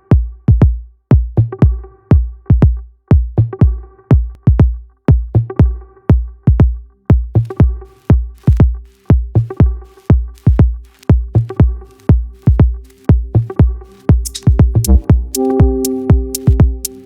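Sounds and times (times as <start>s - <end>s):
kick drum beat: 0.1s - 17.0s
sustained synth notes: 13.8s - 17.0s.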